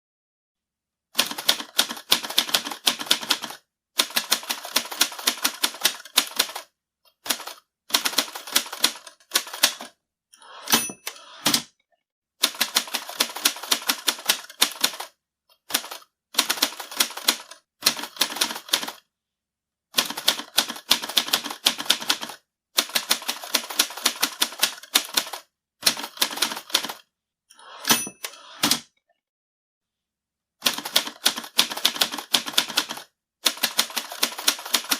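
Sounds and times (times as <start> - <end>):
typewriter bell ring: 10.6 - 11.4, 27.8 - 28.4
typewriter carriage return clatter: 30.7 - 34.9.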